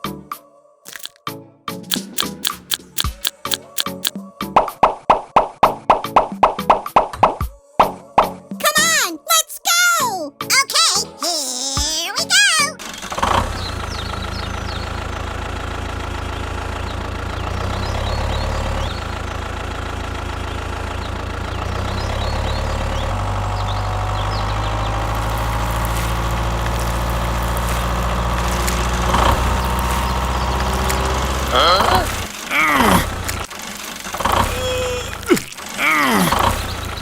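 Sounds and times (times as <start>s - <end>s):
machine motor humming: 24.9s - 37.0s.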